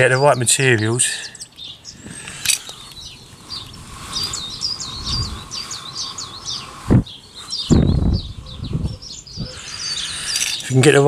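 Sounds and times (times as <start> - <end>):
songbird chirping: 0.0 - 11.0.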